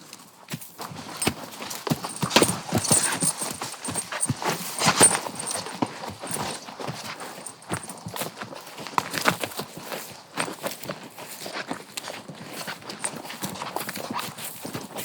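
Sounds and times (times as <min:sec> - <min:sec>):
hooves clip-clopping: 0:00.9 - 0:09.6
lead rope fittings jingling: 0:01.1 - 0:08.3, 0:12.9 - 0:13.4.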